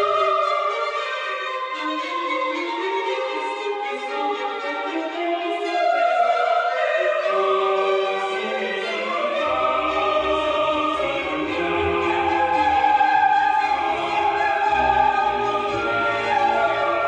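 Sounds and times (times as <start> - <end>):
orchestral music: 0.0 - 17.0
choir singing held notes: 5.5 - 17.0.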